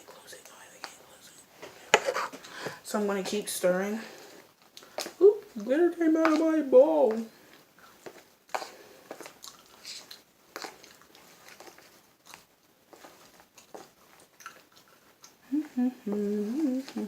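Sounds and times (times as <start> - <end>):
slime squelching in a bowl: 3.1 - 15.4
person speaking: 5.2 - 7.4.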